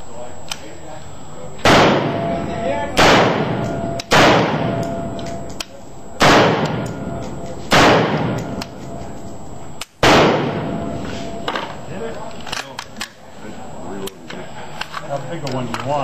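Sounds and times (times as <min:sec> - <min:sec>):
rifle shots with echo: 0:01.6 - 0:02.4, 0:03.0 - 0:05.1, 0:06.2 - 0:08.6, 0:10.0 - 0:10.9.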